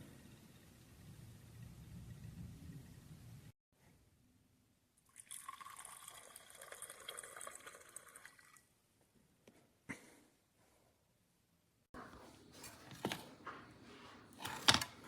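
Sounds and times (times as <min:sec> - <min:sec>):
liquid pouring into container: 0:05.1 - 0:08.7.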